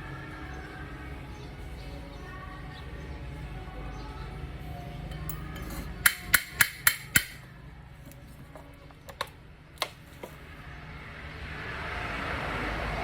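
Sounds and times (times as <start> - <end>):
hammer strikes: 5.1 - 7.4.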